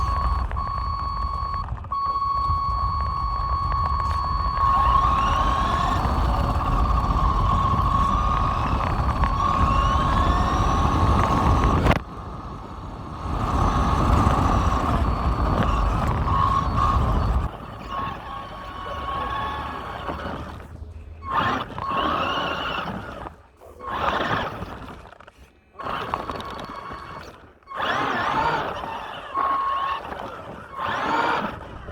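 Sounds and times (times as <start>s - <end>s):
steady rumble: 0.0s - 23.7s
electric toy truck motor whining: 0.0s - 31.9s.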